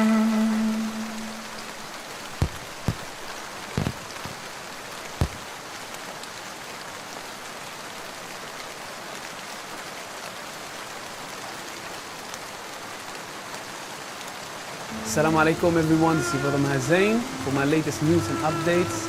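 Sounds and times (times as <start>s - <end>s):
steady rain falling: 0.0s - 19.0s
sharp taps or drips: 2.3s - 3.2s, 3.8s - 4.4s, 5.2s - 5.4s.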